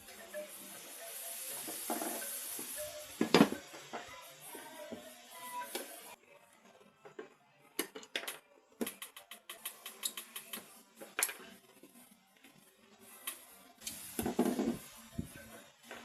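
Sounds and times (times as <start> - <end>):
small hard parts clicking and knocking: 1.6 - 4.1, 7.1 - 11.6.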